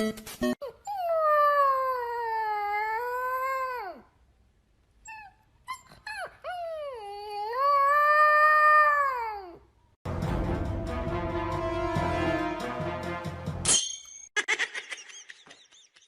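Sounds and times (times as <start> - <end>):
dog howling: 6.6 - 9.6.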